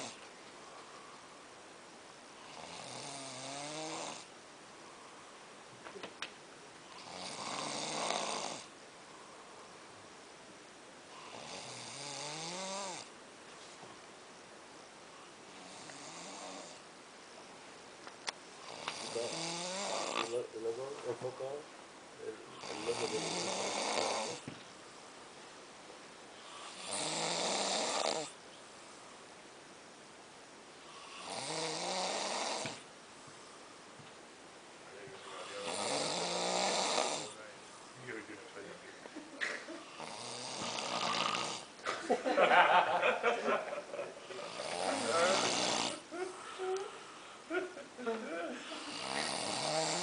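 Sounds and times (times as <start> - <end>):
quiet breathing: 0.0 - 5.7, 6.8 - 10.2, 18.5 - 20.8, 22.2 - 25.1, 32.2 - 34.0, 34.9 - 39.1, 44.2 - 47.6
man snoring: 2.4 - 4.3, 7.0 - 8.7, 11.2 - 13.1, 15.6 - 16.8, 18.6 - 20.4, 22.5 - 24.5, 26.4 - 28.4, 30.9 - 32.8, 35.2 - 37.4, 39.8 - 41.7, 44.4 - 46.1, 48.7 - 50.0.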